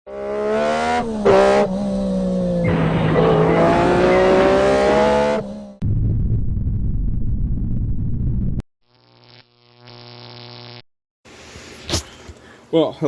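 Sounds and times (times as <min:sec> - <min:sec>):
low steady rumble: 0:05.8 - 0:08.6.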